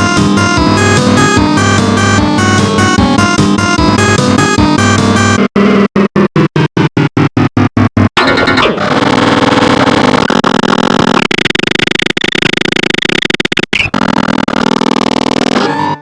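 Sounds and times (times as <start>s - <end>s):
dense synthesized music: 0.0s - 5.4s.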